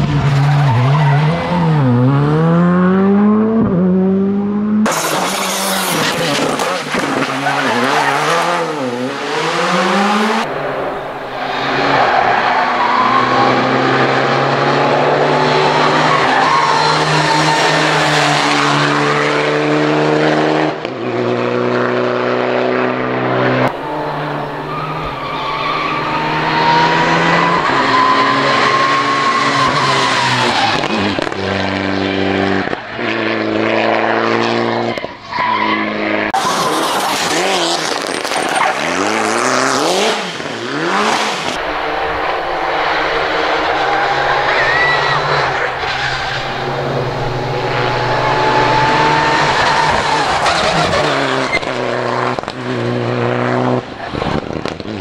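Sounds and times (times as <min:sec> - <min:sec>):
rally car engines revving: 0:00.0 - 0:55.0
tyres squealing: 0:15.3 - 0:18.5, 0:23.7 - 0:30.8, 0:41.6 - 0:52.5.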